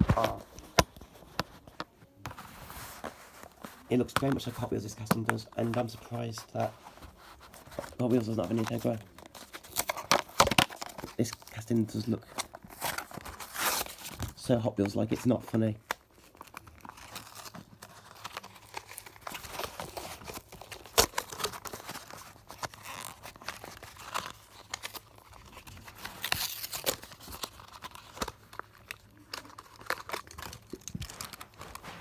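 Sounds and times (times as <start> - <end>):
packaging clicks and rustles: 0.0 - 32.0
packaging torn and crinkled: 7.8 - 14.4, 15.7 - 32.0.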